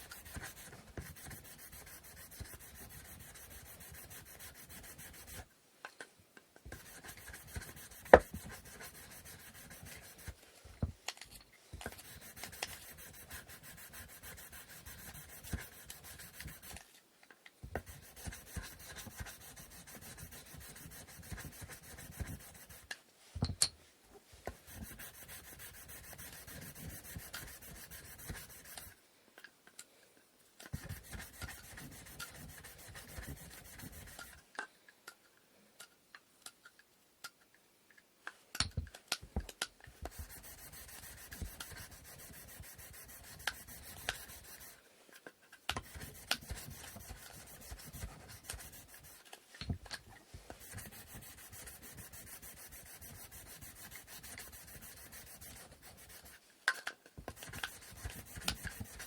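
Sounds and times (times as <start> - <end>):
sandpaper rubbing on wood: 0.0 - 5.4, 6.8 - 10.4, 12.0 - 16.8, 17.8 - 22.9, 24.6 - 28.9, 30.8 - 34.4, 40.0 - 44.8, 45.8 - 49.2, 50.6 - 56.4, 57.4 - 59.0.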